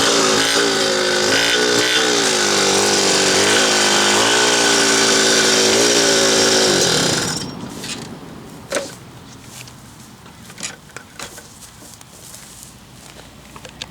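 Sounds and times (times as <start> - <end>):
moped engine running: 0.0 - 7.5.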